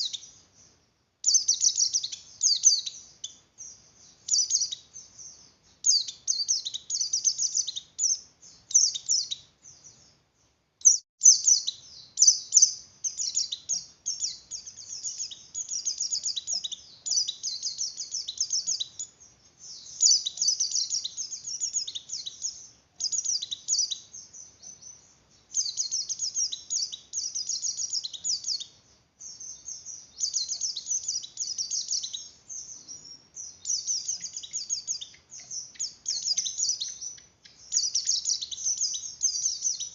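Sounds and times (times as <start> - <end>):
bird twittering: 0.0 - 0.7, 1.3 - 10.1, 10.8 - 39.9.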